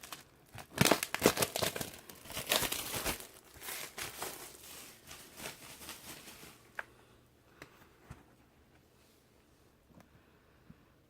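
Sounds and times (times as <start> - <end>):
plastic shrink-wrap tearing: 0.0 - 6.6.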